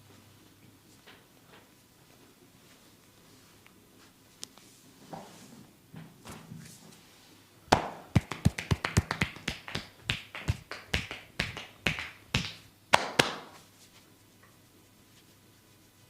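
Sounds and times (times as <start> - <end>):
hand slaps and taps: 7.7 - 13.6.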